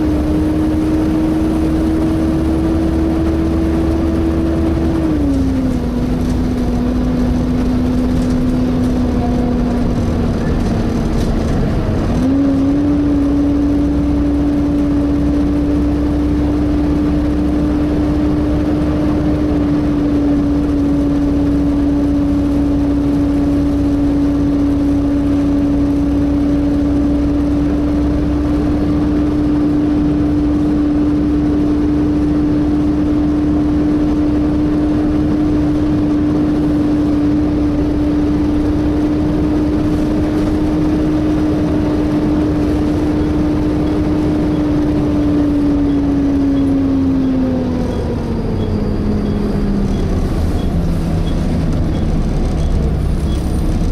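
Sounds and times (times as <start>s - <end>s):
engine cooling fan whining: 0.0s - 53.9s
low engine rumble: 0.0s - 53.9s.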